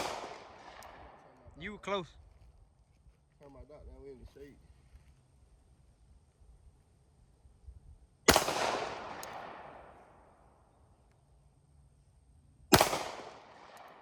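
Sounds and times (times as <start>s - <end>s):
pistol shots with echo: 0.0s - 1.4s, 8.3s - 10.4s, 12.7s - 14.0s.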